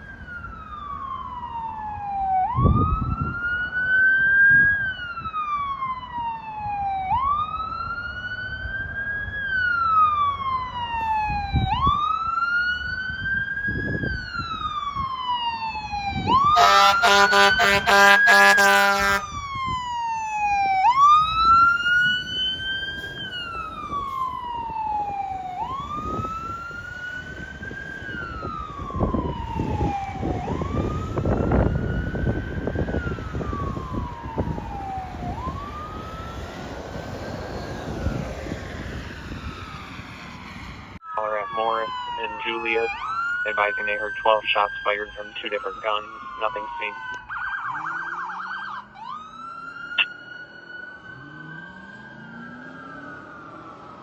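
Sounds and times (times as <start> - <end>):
fire truck siren wailing: 0.0 - 54.0
truck air horn blasts: 16.6 - 19.3.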